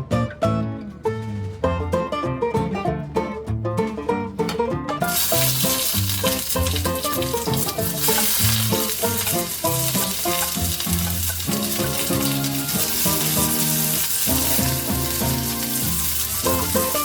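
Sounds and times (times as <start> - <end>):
background music: 0.0 - 17.0
food sizzling in a pan: 5.1 - 17.0.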